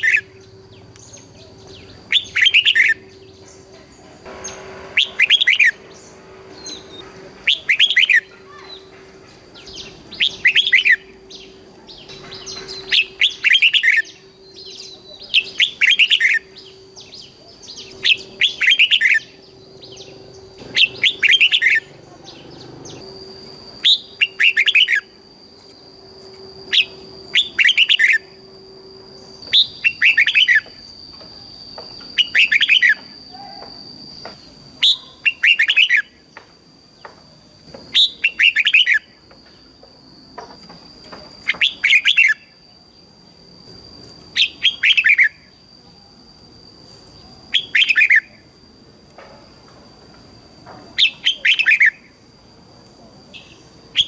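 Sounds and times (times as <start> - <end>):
bird singing warbling phrases: 0.0 - 25.1, 26.7 - 28.4, 29.3 - 30.7, 32.2 - 33.7, 34.8 - 36.2, 37.9 - 39.1, 44.4 - 45.6, 47.5 - 48.4, 51.0 - 52.2
faint steady hum: 0.0 - 54.0.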